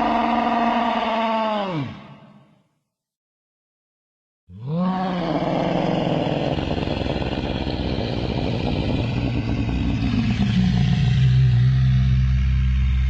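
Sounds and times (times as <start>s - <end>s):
creature rumbling growl: 0.0s - 2.2s, 4.5s - 12.6s.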